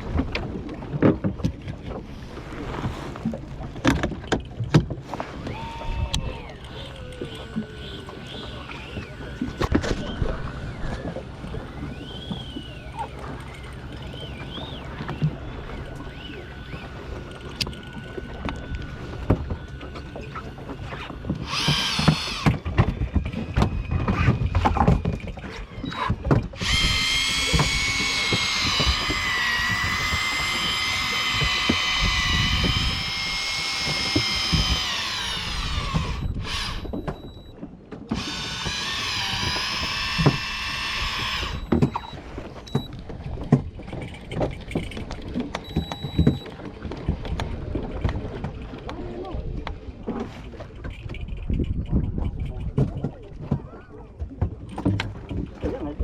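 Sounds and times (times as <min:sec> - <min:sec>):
water noise: 0:00.0 - 0:56.0
wind: 0:00.0 - 0:56.0
fishing reel motor whining: 0:05.2 - 0:37.5, 0:38.1 - 0:42.4.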